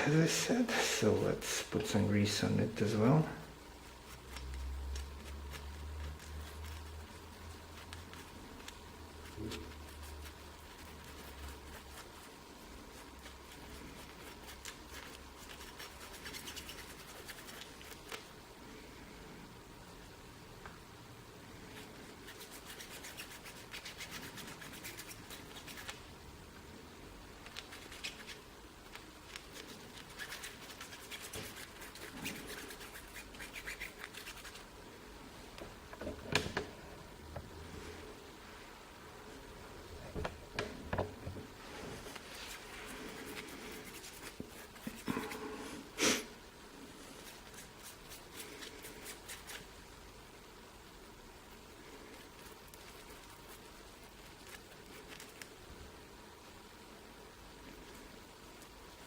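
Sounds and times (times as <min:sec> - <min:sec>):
hands scratching and rubbing: 0:03.8 - 0:18.3, 0:21.6 - 0:26.1, 0:27.4 - 0:34.7, 0:41.6 - 0:45.8, 0:47.0 - 0:49.7, 0:52.1 - 0:55.6.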